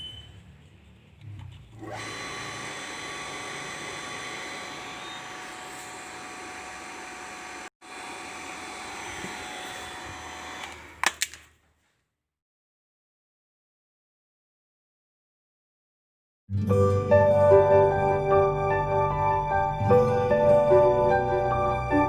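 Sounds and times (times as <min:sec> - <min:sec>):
water pump whining: 0:01.6 - 0:11.1.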